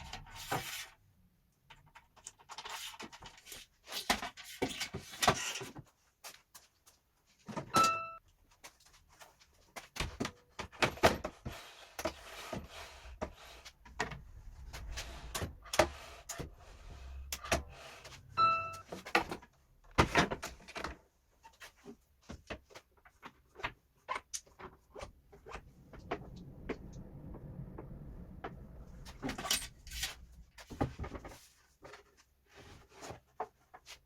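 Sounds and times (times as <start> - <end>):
short electronic beep: 7.8 - 8.2, 18.3 - 18.9.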